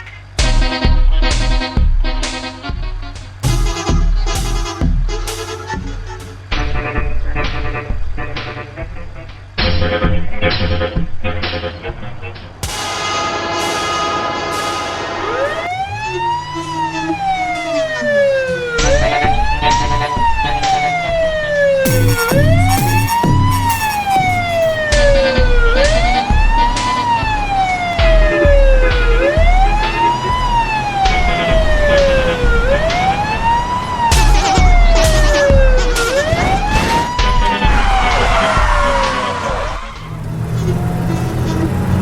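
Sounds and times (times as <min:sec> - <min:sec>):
low pulsing bass beat: 0:00.4 - 0:12.8, 0:21.9 - 0:33.0, 0:34.1 - 0:36.6
sharp hits: 0:03.4 - 0:06.6, 0:12.6 - 0:15.4, 0:21.9 - 0:25.1, 0:34.1 - 0:40.2
police siren wailing: 0:13.8 - 0:42.0.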